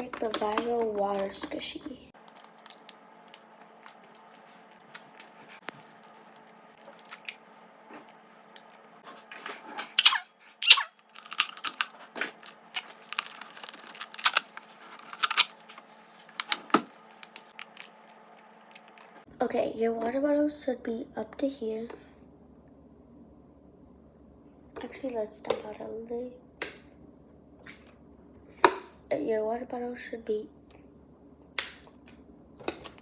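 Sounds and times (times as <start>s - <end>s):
plastic bottle crinkling: 10.0s - 18.0s.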